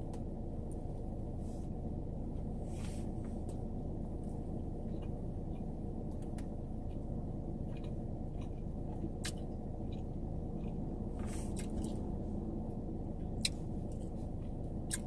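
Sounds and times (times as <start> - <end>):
low hum: 0.0 - 15.0
person chewing sandwich: 4.6 - 7.0, 7.6 - 12.2.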